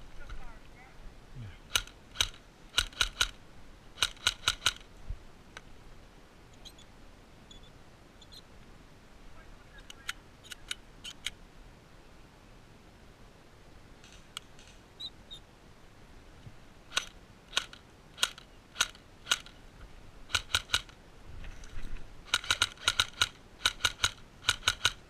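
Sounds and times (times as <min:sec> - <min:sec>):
airsoft gun shots: 0:22.3 - 0:25.0.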